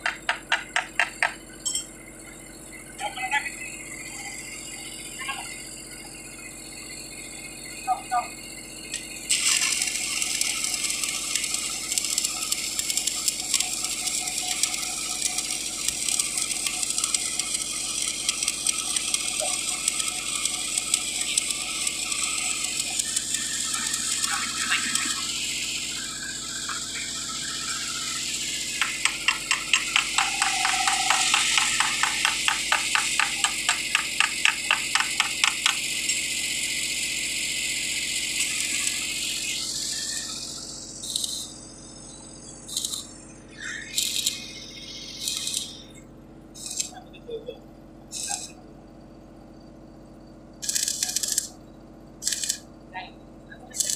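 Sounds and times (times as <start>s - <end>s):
arc welding crackle: 0.0s - 1.4s, 8.8s - 46.0s, 46.6s - 47.0s, 48.1s - 48.6s, 50.6s - 51.6s, 52.2s - 52.7s, 53.7s - 53.9s
quick ticks: 28.7s - 35.9s, 42.7s - 43.1s, 44.0s - 44.5s, 45.2s - 45.8s, 50.6s - 51.5s, 52.2s - 52.6s.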